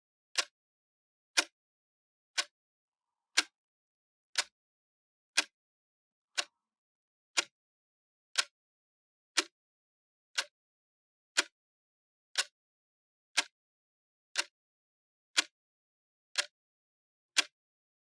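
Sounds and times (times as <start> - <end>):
clock ticking: 3.4 - 3.6.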